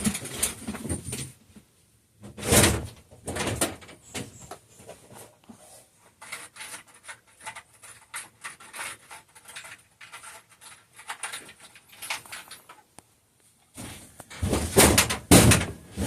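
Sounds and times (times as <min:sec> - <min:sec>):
small hand tools clicking and rattling: 0:06.2 - 0:13.0.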